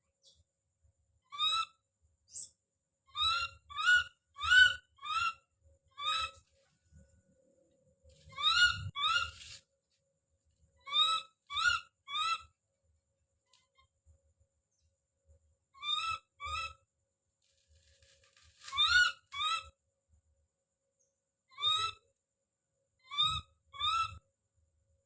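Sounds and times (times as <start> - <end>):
baby monkey screaming: 1.3 - 1.7, 3.2 - 5.4, 6.0 - 6.3, 8.3 - 9.4, 10.8 - 12.5, 15.8 - 16.8, 18.6 - 19.7, 21.5 - 22.0, 23.1 - 24.2.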